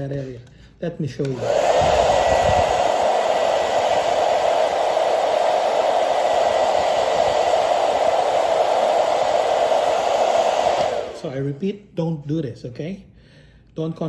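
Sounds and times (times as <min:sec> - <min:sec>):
blow dryer running: 0:01.2 - 0:11.6.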